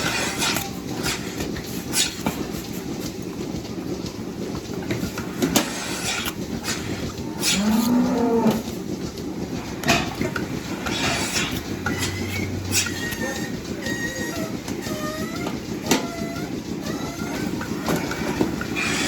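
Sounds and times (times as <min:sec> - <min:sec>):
cow mooing: 0:07.4 - 0:08.7.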